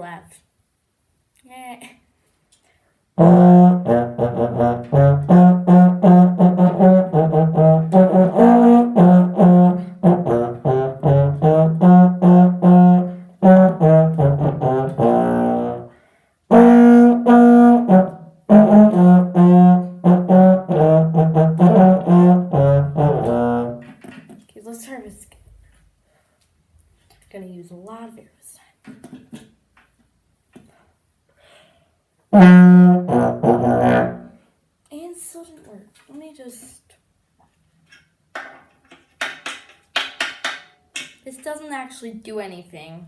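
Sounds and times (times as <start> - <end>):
low brass tune: 3.2 - 24.0, 32.3 - 34.5.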